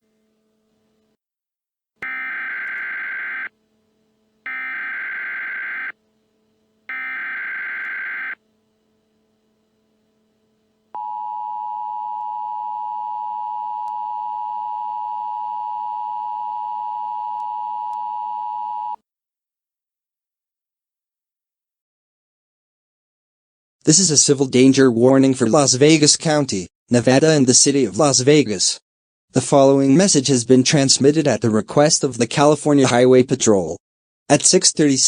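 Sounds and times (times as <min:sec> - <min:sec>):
screeching digital data tones: 0:02.0 - 0:03.5, 0:04.5 - 0:05.9, 0:06.9 - 0:08.4
two-tone attention signal: 0:02.0 - 0:03.5, 0:04.5 - 0:05.9, 0:06.9 - 0:08.4, 0:11.0 - 0:19.0.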